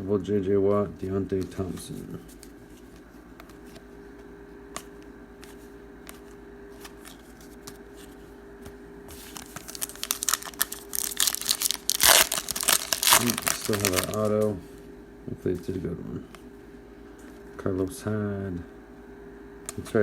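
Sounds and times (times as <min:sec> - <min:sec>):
steady low hum: 0:00.0 - 0:20.0
cards being handled: 0:01.4 - 0:14.6
foil wrapper tearing: 0:09.3 - 0:14.5.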